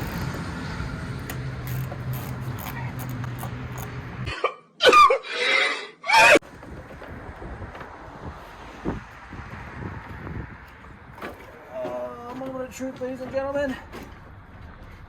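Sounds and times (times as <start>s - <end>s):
low hum: 0.0s - 4.3s.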